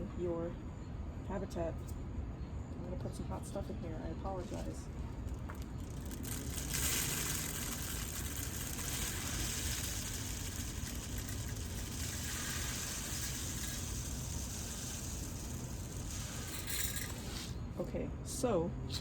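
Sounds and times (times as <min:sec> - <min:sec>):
birdseed pouring into plastic tube: 0:04.4 - 0:17.6.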